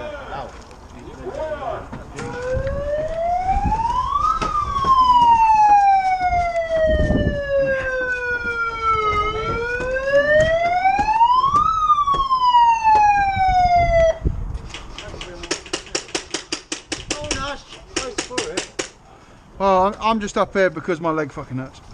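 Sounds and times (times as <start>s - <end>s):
siren wailing: 2.2s - 14.3s.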